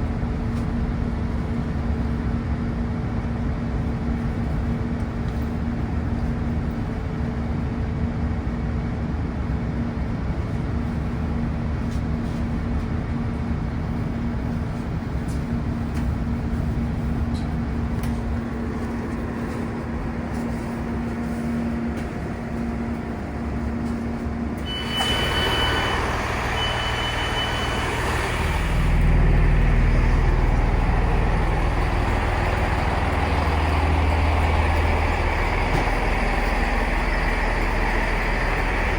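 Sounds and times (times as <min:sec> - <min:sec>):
diesel train engine humming: 0:00.0 - 0:38.9
short high beeps: 0:24.7 - 0:28.4.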